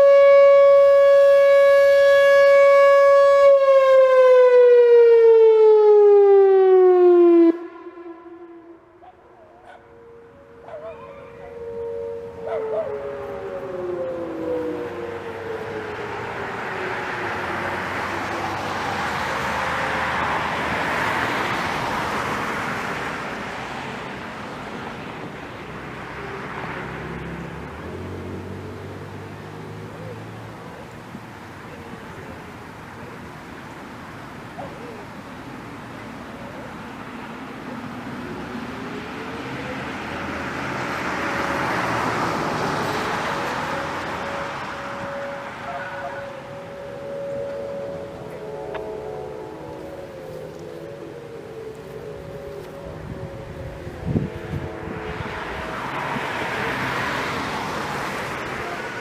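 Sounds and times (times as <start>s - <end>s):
electronic warning siren: 0.0s - 21.1s, 39.4s - 59.0s
car passing by: 8.9s - 31.6s, 35.4s - 59.0s.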